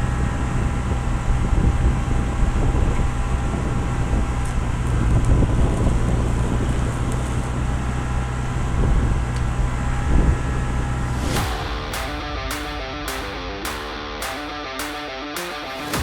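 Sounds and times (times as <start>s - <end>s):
guitar music: 11.4s - 16.0s.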